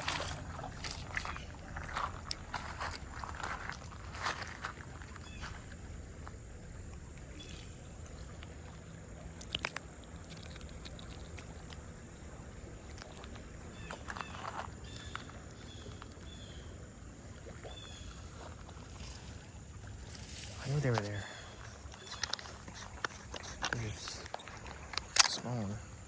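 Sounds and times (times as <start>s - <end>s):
low rumble: 0.0s - 14.4s.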